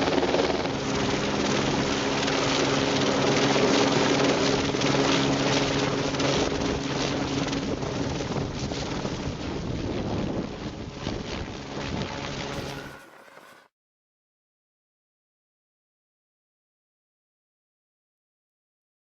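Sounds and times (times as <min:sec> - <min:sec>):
helicopter hum: 0:00.0 - 0:13.7
helicopter rotor rushing noise: 0:00.0 - 0:13.7.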